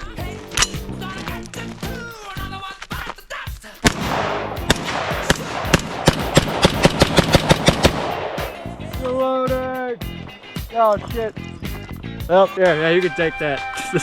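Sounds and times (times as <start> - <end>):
background music: 0.0 - 14.0
rifle shots fired rapidly: 3.8 - 8.6.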